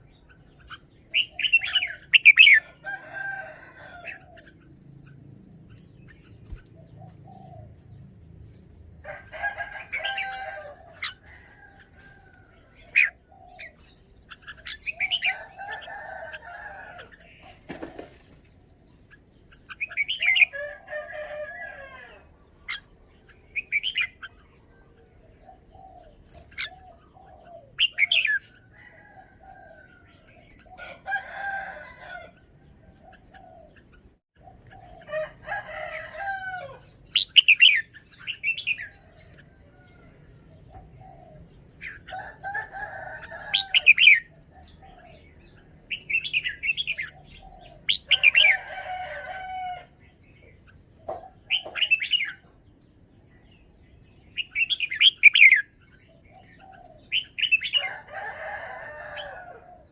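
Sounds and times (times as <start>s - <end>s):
bird singing warbled phrases: 0.0s - 59.9s.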